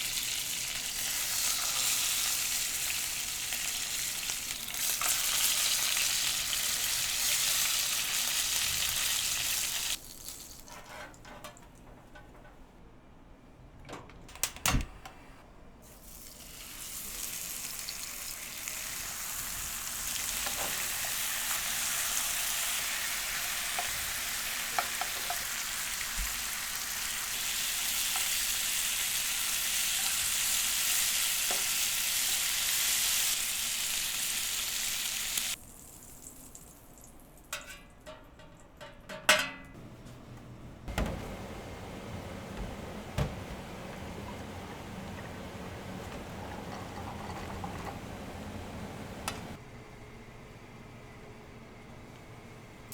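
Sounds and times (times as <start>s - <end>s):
food sizzling in a hot pan: 0.0s - 10.4s, 16.2s - 36.7s.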